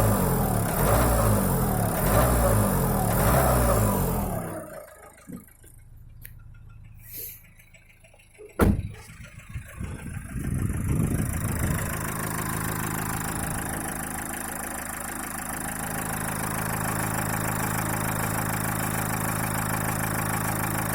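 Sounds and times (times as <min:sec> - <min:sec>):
diesel engine knocking idle: 0:00.0 - 0:20.9
sharp thump: 0:08.6 - 0:09.1.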